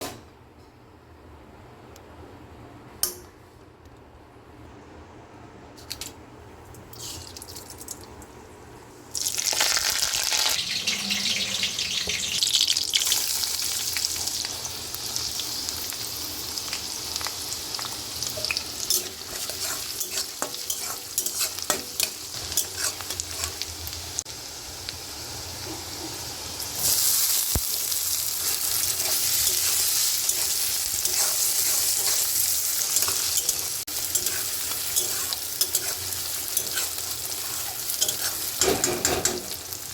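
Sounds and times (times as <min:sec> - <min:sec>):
food sizzling in hot oil: 0:09.1 - 0:39.9
spatula scraping a pan: 0:18.4 - 0:23.6, 0:28.4 - 0:39.2.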